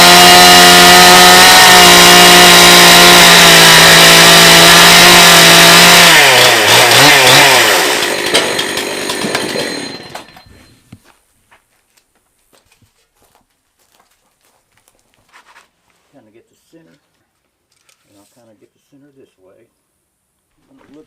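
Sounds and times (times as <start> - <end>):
chainsaw engine revving: 0.0 - 10.4.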